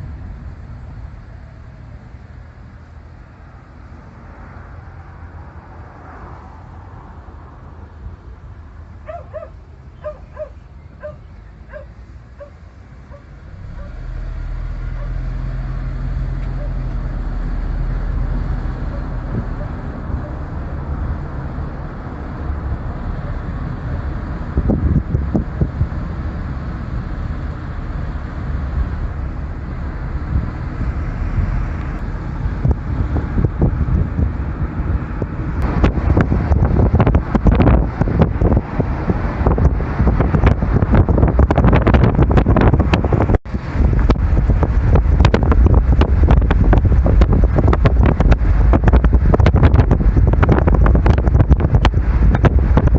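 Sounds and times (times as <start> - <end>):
low vehicle rumble: 0.0 - 52.9
dog barking short yelps: 9.1 - 14.0.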